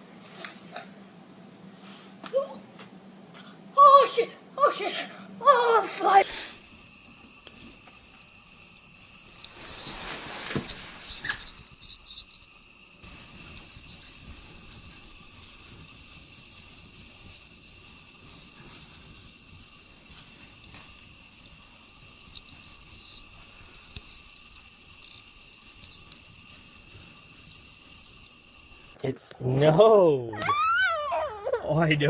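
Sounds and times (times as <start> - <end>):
insects chirping: 6.1 - 29.0.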